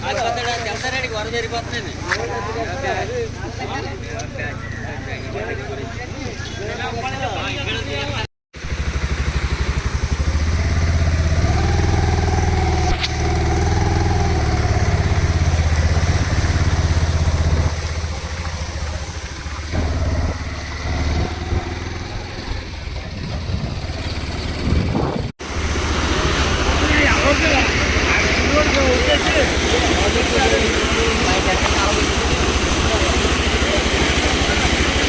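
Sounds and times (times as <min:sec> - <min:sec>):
motorcycle engine running: 0:07.9 - 0:35.0.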